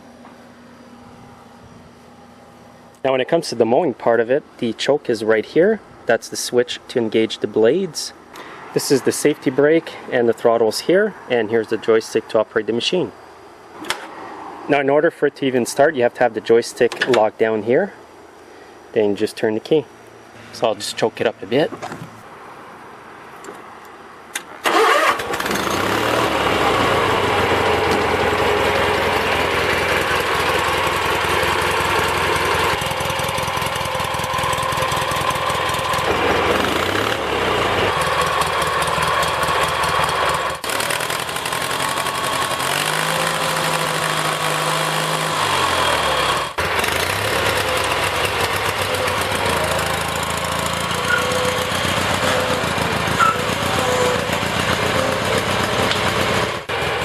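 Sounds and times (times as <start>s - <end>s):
mower engine cranking and running: 24.3s - 57.0s.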